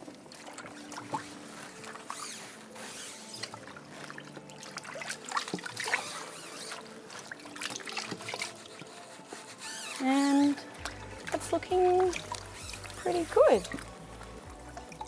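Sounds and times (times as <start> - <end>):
water spattering and dripping: 0.0 - 15.0
water trickling and splashing: 0.0 - 15.0.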